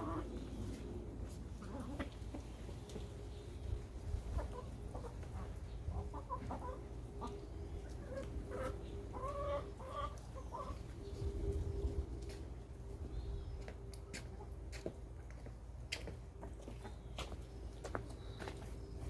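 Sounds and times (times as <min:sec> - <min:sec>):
low steady rumble: 0:00.0 - 0:14.0
chickens clucking softly: 0:00.0 - 0:18.8.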